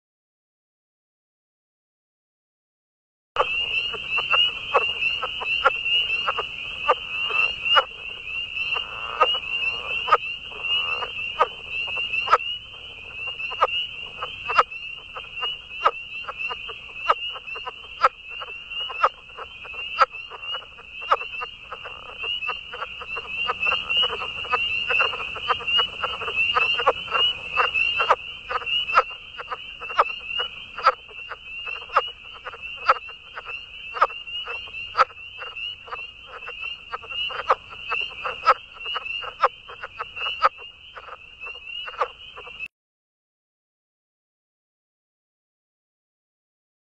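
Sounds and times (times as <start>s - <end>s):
high-pitched animal chorus: 3.4s - 42.7s
sharp clicking calls: 3.4s - 42.7s.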